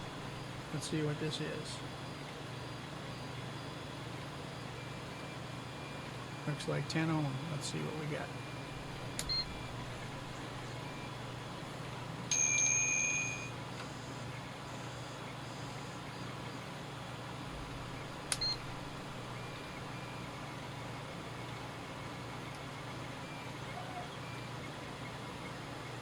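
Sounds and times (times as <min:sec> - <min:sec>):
steady low hum: 0:00.0 - 0:26.0
multimeter high beep: 0:09.3 - 0:09.8, 0:12.3 - 0:13.6, 0:18.3 - 0:18.8.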